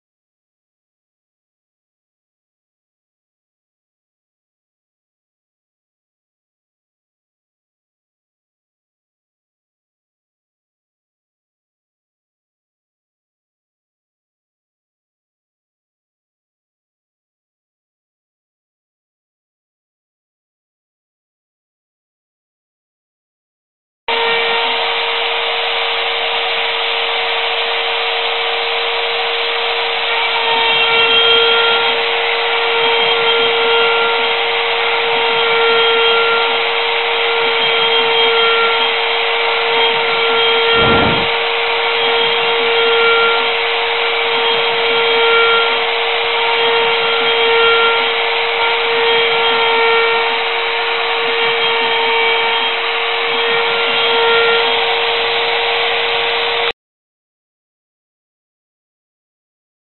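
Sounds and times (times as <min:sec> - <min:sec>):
spindle motor whine: 0:24.1 - 0:56.7.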